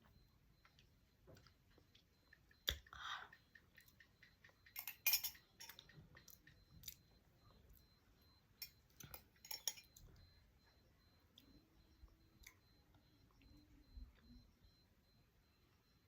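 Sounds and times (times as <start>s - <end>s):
kitchen utensils clinking: 4.8s - 5.8s.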